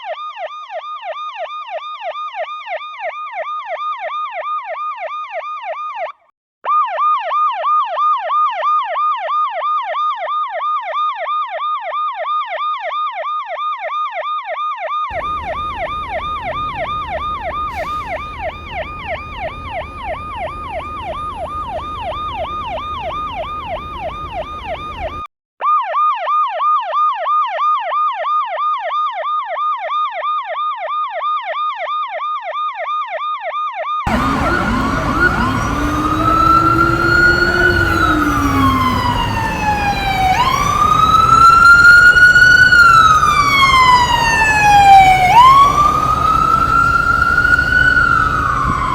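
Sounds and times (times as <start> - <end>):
ambulance siren yelping: 15.1 - 25.3, 34.1 - 48.9
different louder siren: 15.1 - 25.3, 34.1 - 48.9
low vehicle rumble: 15.1 - 25.3, 34.1 - 48.9.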